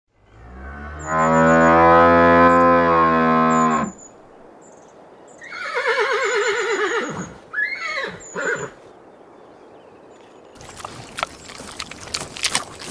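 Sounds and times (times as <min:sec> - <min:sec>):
cow mooing: 0:00.3 - 0:04.0
horse whinnying: 0:05.4 - 0:08.8.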